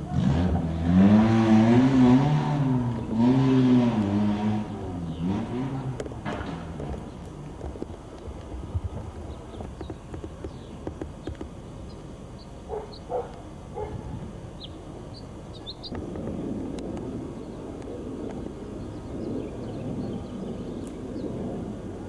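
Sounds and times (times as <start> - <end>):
steady rushing noise: 0.7 - 22.0
small birds chirping: 4.0 - 6.2, 6.8 - 22.0
low rumble: 11.7 - 22.0.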